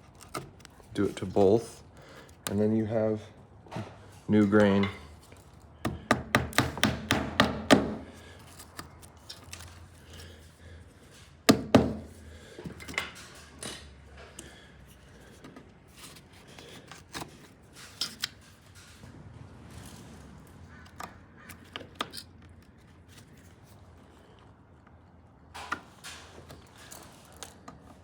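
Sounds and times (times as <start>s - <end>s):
sharp wooden knocks: 5.8s - 8.1s, 11.5s - 12.1s.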